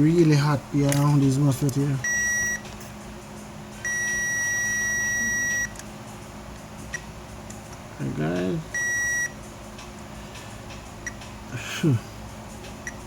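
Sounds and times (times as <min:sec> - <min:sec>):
multimeter high beeps: 0:02.0 - 0:02.6, 0:03.8 - 0:05.8, 0:08.7 - 0:09.4.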